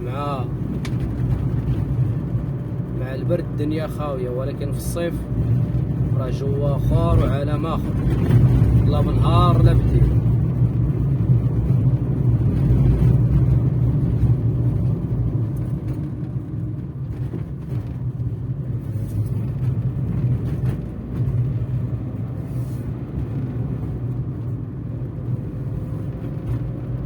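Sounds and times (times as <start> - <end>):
car engine and road rumble: 0.0 - 27.0.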